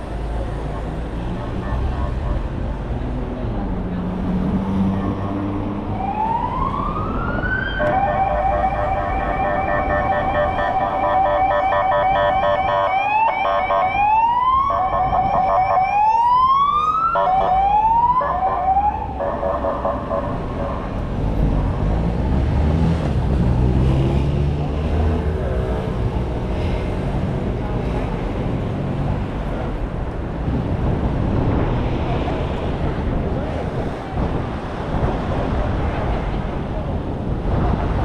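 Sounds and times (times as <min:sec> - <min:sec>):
street traffic noise: 0:00.0 - 0:38.0
siren wailing and yelping: 0:06.0 - 0:20.8.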